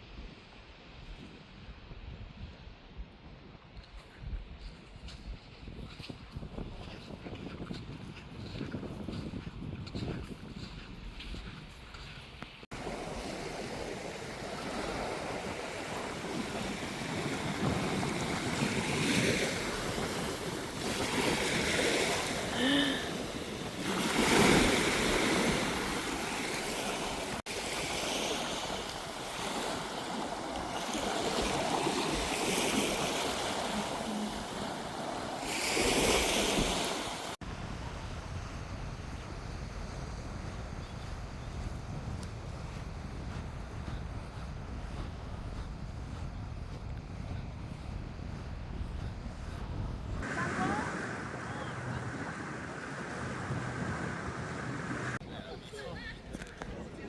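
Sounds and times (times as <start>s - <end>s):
wind buffeting microphone: 0.0s - 57.0s
sea waves: 12.6s - 41.4s, 48.9s - 55.2s.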